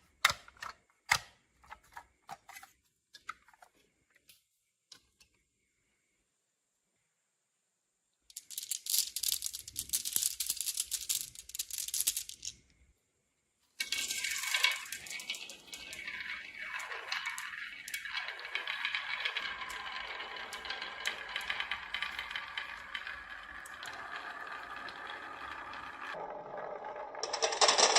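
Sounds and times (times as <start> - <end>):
marbles clattering down marble run: 8.3 - 12.6, 13.8 - 27.9.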